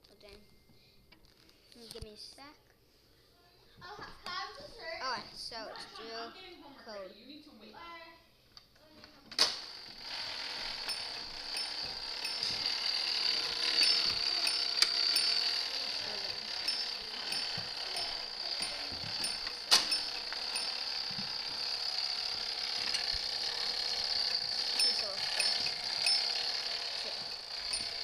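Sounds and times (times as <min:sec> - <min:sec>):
sharp click: 0:18.6 - 0:20.7.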